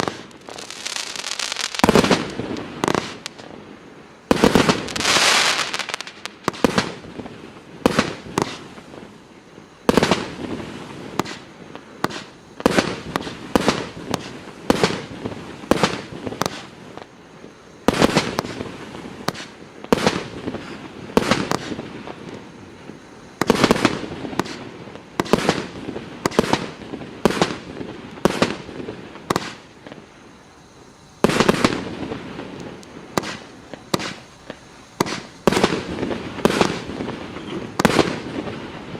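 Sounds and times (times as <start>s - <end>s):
firework bangs with crackle: 0.0s - 38.9s.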